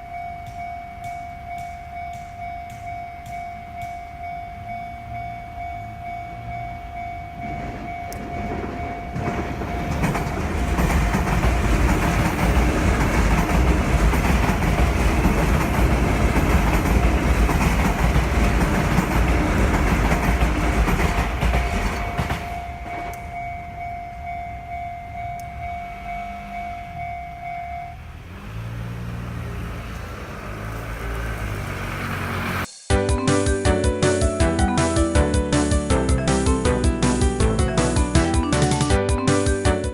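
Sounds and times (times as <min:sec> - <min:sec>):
level crossing warning bell: 0:00.0 - 0:28.8, 0:33.2 - 0:39.9
train rumble and wheel noise: 0:00.0 - 0:32.7.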